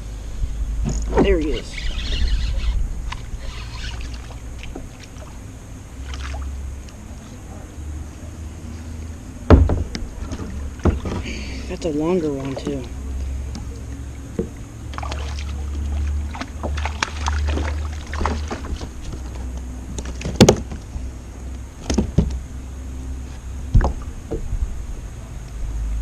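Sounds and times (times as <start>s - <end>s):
wind rumble on microphone: 0.0s - 5.9s, 15.6s - 26.0s.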